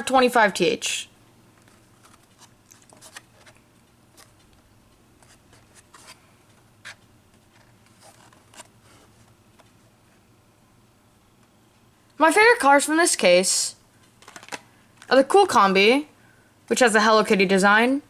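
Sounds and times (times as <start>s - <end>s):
low room hum: 0.0s - 18.0s
plastic packaging clicks and rubs: 1.5s - 9.8s, 14.0s - 15.1s.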